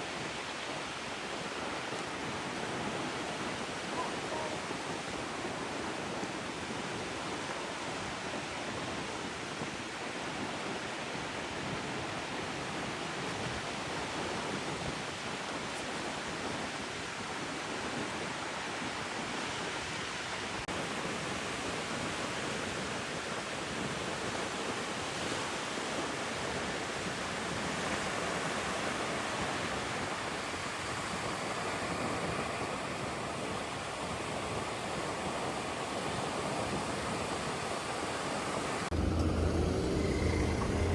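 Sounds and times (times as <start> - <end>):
ocean surf rushing: 38.3 - 40.9.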